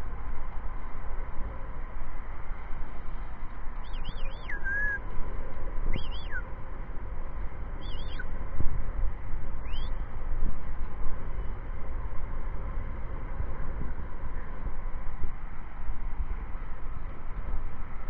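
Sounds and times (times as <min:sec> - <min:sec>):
bird warbling whistle: 0:03.8 - 0:05.0, 0:05.9 - 0:06.4, 0:07.8 - 0:08.2, 0:09.6 - 0:09.9.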